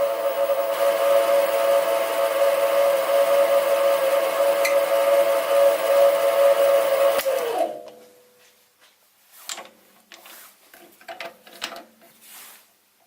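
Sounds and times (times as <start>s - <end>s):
lathe winding down: 0.0s - 7.8s
lathe whining: 0.0s - 7.9s.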